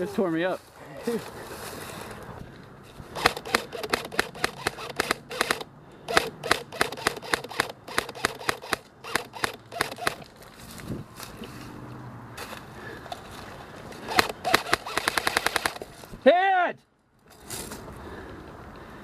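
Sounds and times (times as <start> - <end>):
airsoft rifle shots: 3.2 - 10.2, 14.1 - 15.8.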